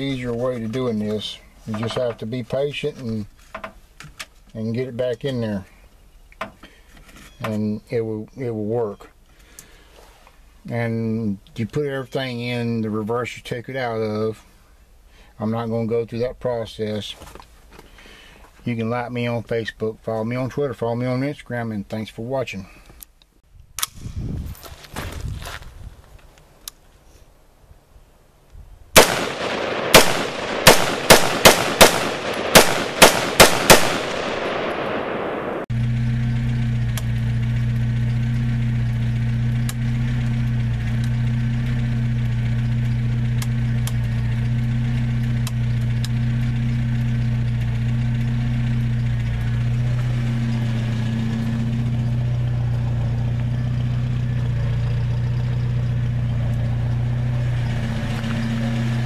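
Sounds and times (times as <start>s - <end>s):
loud sharp bangs: 29.0s - 35.7s
car engine idling: 29.0s - 59.0s.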